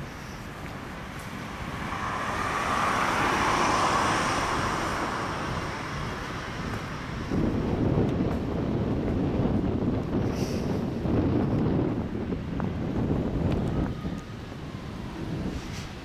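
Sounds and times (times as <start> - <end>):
vehicle passing: 0.0 - 10.0
wind rumble on microphone: 0.0 - 16.0.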